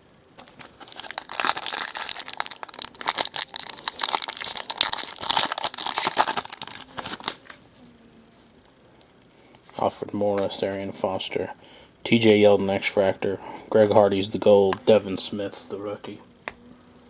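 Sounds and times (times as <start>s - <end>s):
foil wrapper crinkling and tearing: 0.4s - 7.6s.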